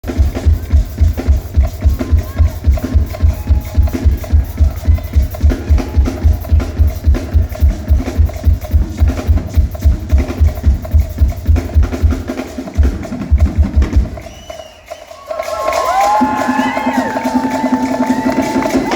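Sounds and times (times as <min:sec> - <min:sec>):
heavy kick drum beat: 0:00.0 - 0:14.3
live band playing fast music: 0:00.0 - 0:18.9.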